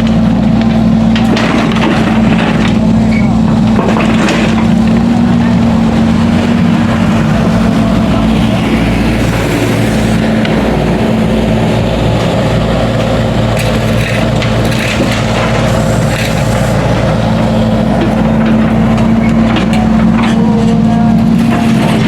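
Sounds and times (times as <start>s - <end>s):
broken material cracking and knocking: 0.0s - 2.8s, 13.6s - 16.6s
excavator diesel engine running: 0.0s - 22.0s.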